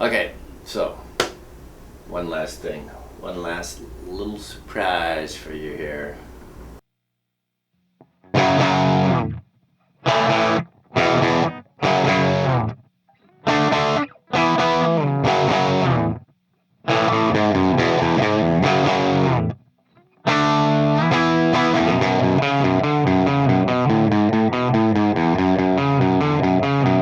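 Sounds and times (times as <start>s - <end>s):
distorted electric guitar chords: 8.3s - 9.4s, 10.1s - 12.8s, 13.4s - 16.2s, 16.9s - 19.6s, 20.3s - 27.0s.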